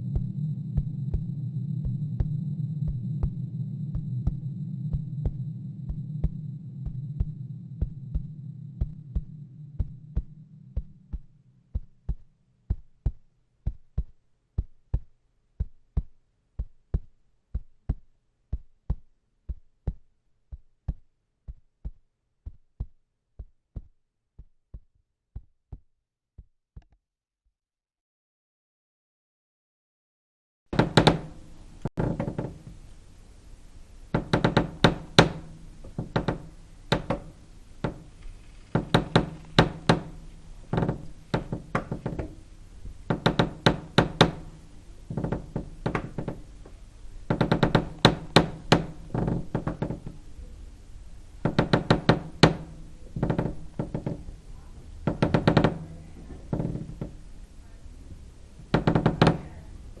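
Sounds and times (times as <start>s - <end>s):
low hollow ring: 0.0s - 12.1s
heavy knocking: 0.0s - 23.9s, 30.8s - 33.1s, 34.0s - 59.9s.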